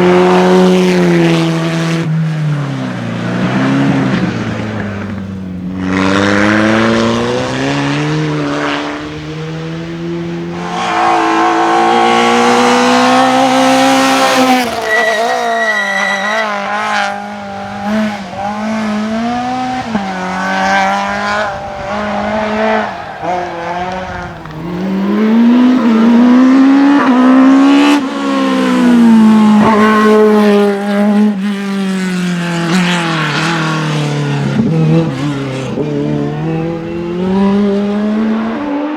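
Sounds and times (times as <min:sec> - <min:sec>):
race car engines at full throttle: 0:00.0 - 0:38.9
tyre squeal: 0:10.6 - 0:17.6.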